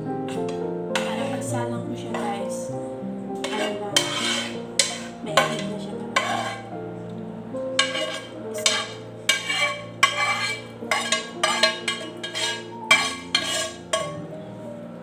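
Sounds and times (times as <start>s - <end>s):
soft background music: 0.0s - 15.0s
utensil scraping a cooking pan: 0.4s - 2.3s, 3.4s - 6.8s, 7.8s - 14.4s.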